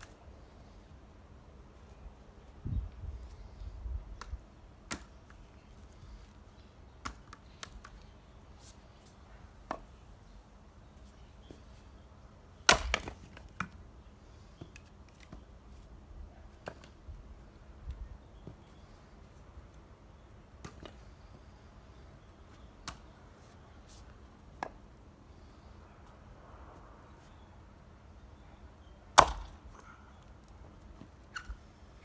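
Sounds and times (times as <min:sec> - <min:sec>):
axe striking firewood: 0:12.6 - 0:13.7, 0:29.2 - 0:29.6.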